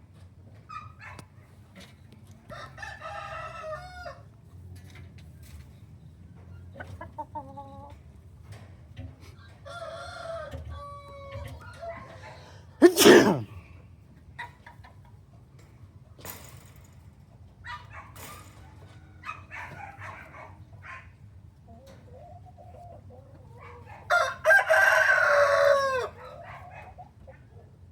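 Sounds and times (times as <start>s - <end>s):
rooster crowing: 24.1s - 26.2s.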